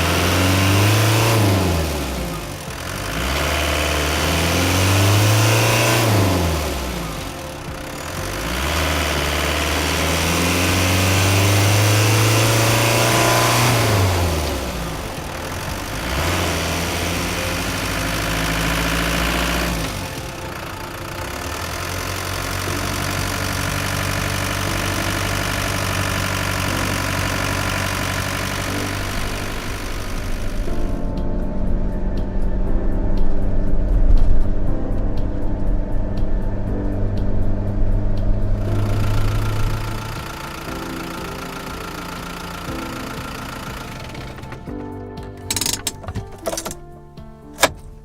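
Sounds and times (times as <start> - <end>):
diesel engine revving and idling: 0.0 - 47.0.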